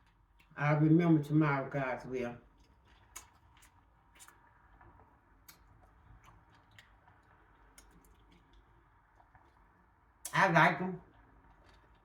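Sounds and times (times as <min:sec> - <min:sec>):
mouth clicks from chewing: 0:02.6 - 0:04.4.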